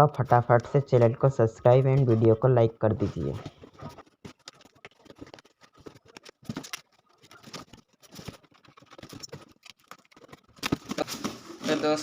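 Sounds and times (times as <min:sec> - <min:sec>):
cardboard box being opened: 0:03.6 - 0:12.0.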